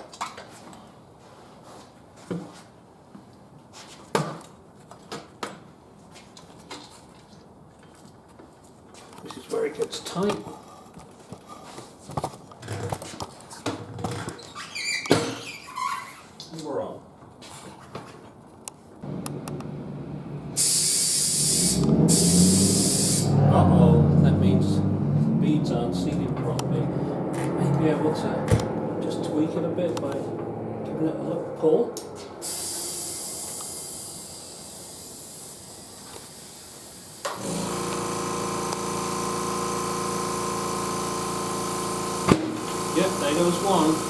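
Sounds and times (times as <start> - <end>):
low steady hum: 19.0 - 20.6
air compressor motor humming: 19.0 - 23.5, 32.4 - 44.0
compressed air hissing into tire: 20.5 - 23.4, 32.4 - 44.0.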